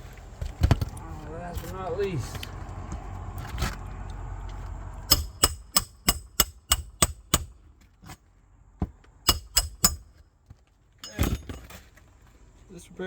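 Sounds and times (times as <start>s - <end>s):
hammer striking metal: 5.1s - 7.6s, 9.2s - 10.2s.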